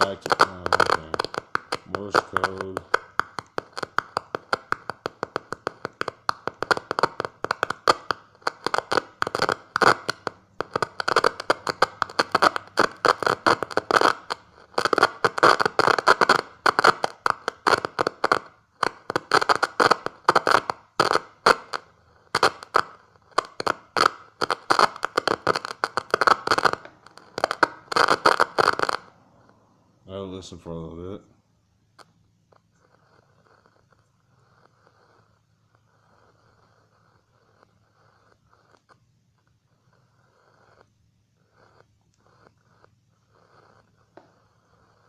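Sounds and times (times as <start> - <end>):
morse code clicks and crackles: 0.0 - 29.6.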